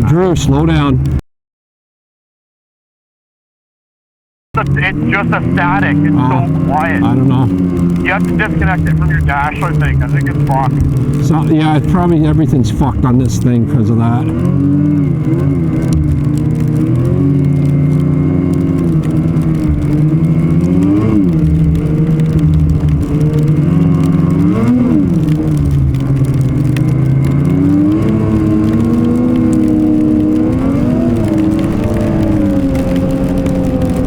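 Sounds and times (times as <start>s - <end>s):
snowmobile engine running: 4.6s - 25.2s.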